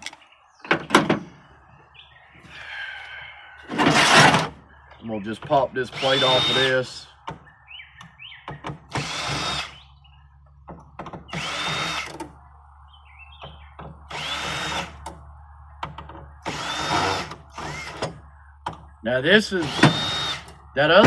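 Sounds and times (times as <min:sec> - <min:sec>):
power drill whining: 0:05.9 - 0:06.9, 0:08.9 - 0:09.8, 0:11.3 - 0:12.2, 0:14.1 - 0:15.0, 0:16.4 - 0:18.2, 0:19.6 - 0:20.6.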